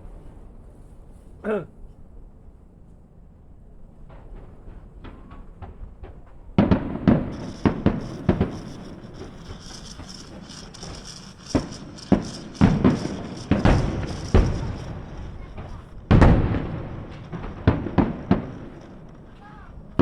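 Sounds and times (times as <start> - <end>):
fireworks pops and booms: 4.0 - 20.0
high crackling of fireworks: 4.0 - 20.0.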